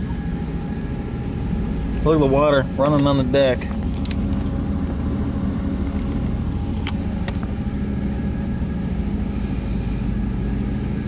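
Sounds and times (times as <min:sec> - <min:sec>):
boat engine droning: 0:00.0 - 0:11.0.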